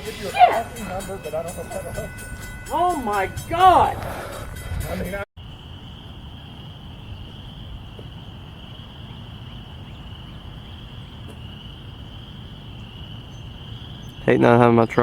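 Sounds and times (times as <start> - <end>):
insect chorus trilling: 5.4 - 15.0.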